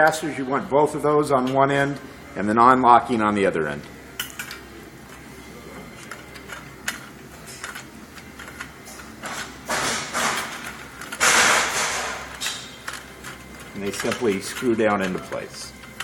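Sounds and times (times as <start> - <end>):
metal casters clinking and tapping: 4.1 - 5.2, 5.9 - 16.0
metal scraping: 5.1 - 16.0.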